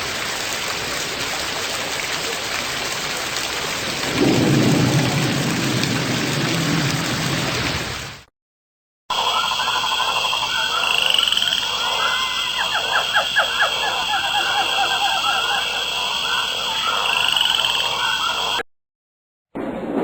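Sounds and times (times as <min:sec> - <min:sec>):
frogs croaking: 0:09.1 - 0:18.6.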